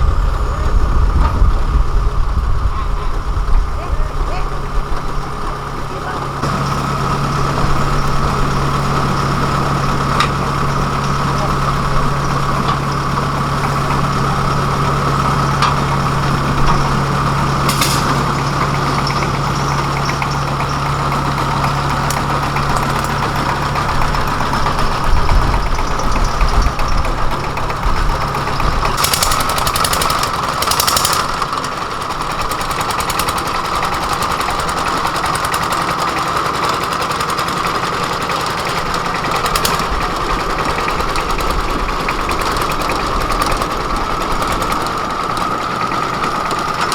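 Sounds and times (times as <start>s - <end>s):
engine running: 0.0s - 46.9s
short rattles or knocks: 17.5s - 20.8s.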